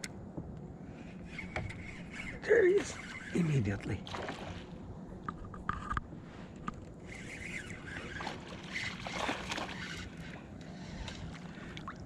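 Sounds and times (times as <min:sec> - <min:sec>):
fishing reel being cranked: 0:01.3 - 0:03.9, 0:07.0 - 0:10.3.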